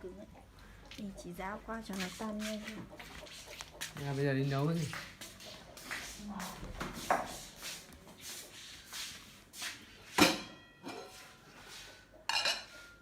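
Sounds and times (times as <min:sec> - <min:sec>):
kitchenware knocks and clatter: 0:10.2 - 0:11.1, 0:12.3 - 0:12.8.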